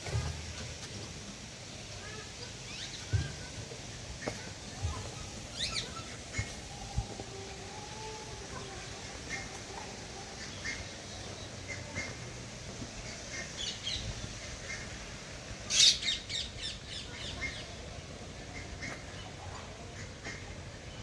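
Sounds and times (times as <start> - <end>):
faint birds chirping: 1.6 - 21.0
bird squawking: 15.7 - 17.7.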